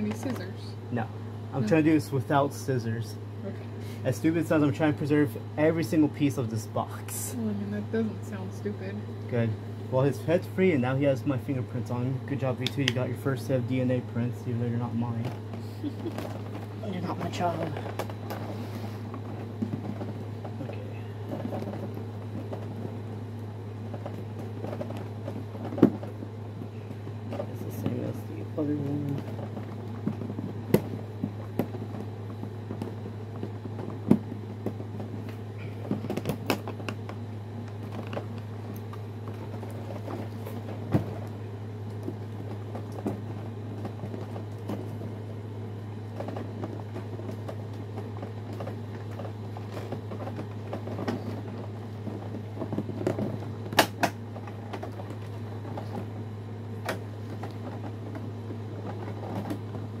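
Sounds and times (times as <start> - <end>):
steady low hum: 0.0 - 60.0
cardboard and plastic packaging clicks: 46.2 - 56.0.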